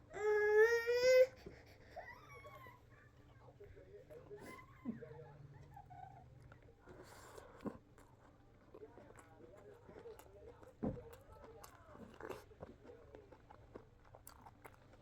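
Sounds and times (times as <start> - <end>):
crunchy chewing: 6.9 - 15.0.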